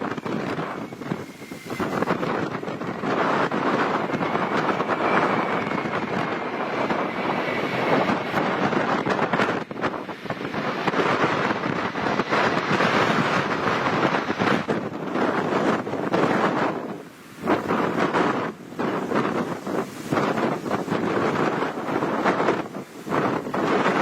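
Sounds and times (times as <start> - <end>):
faint high engine whine: 0.0 - 15.1
jet engines rushing: 0.0 - 24.0
wind buffeting microphone: 0.0 - 24.0.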